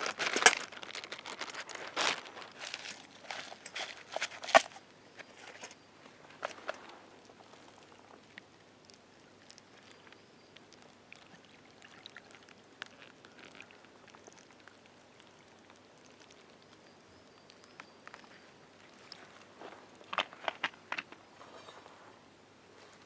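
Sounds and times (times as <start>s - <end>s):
campfire crackling: 0.0s - 21.4s.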